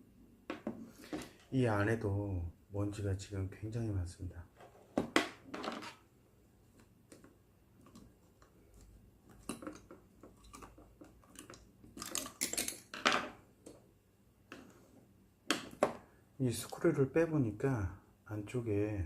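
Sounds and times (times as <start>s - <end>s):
plastic parts clicking and scraping: 6.7s - 13.0s
plastic parts clattering: 9.3s - 13.4s.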